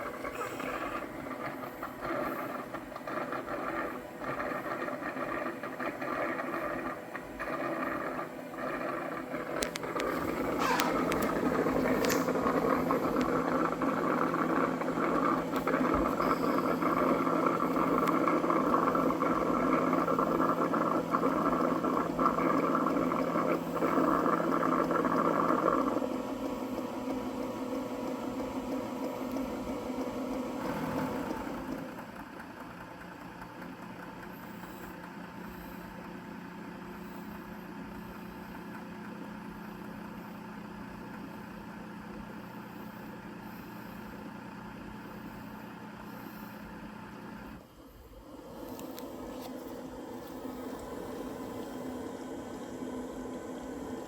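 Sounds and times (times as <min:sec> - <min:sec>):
mechanical whir of docking station: 0:00.0 - 0:54.0.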